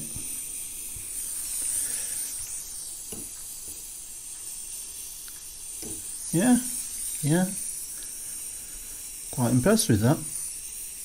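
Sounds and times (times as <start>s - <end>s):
gas soldering iron hissing: 0.0s - 11.0s
faint tap: 3.1s - 3.3s.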